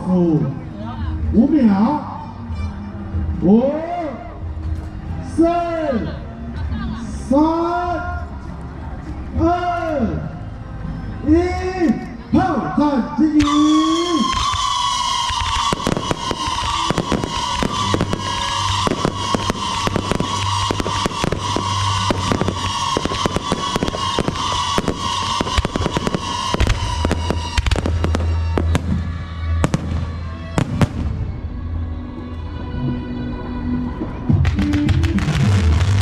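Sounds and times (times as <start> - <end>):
high whistle-like tone: 13.4 - 29.6
firecrackers banging: 13.4 - 31.5, 33.3 - 36.0.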